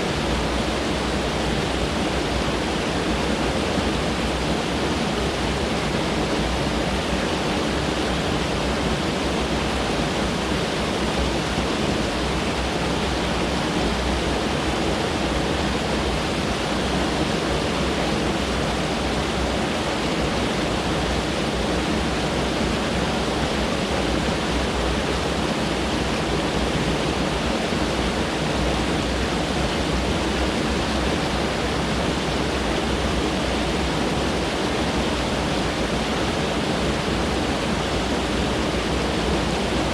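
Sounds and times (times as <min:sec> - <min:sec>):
stream rushing over rocks: 0:00.0 - 0:39.9.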